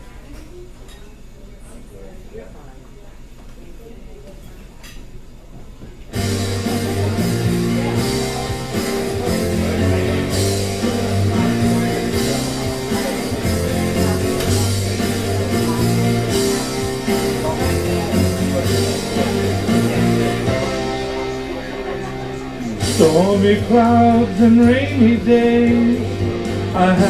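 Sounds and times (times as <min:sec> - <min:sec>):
guitar-led rock band music: 0:06.2 - 0:27.0.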